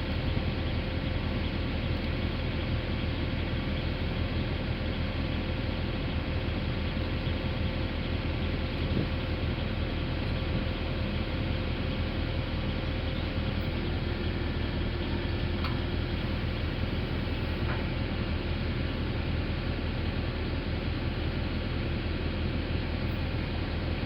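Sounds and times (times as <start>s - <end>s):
rig engine low rumble: 0.0s - 24.0s
faint click: 15.6s - 15.8s.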